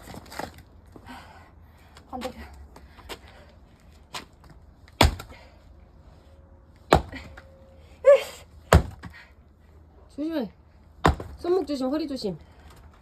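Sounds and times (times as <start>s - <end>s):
axe splitting firewood: 4.9s - 5.5s, 6.9s - 7.4s, 8.6s - 9.3s, 11.0s - 11.5s.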